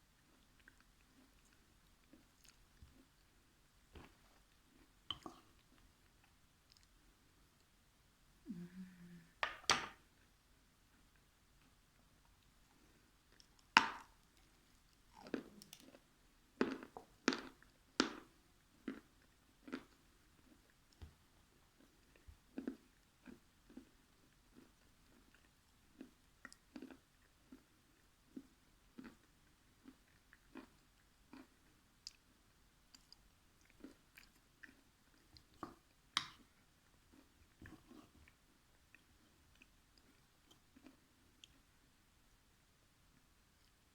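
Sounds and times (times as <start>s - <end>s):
person chewing crunchy food: 12.8s - 20.8s, 21.7s - 32.3s, 32.9s - 41.6s.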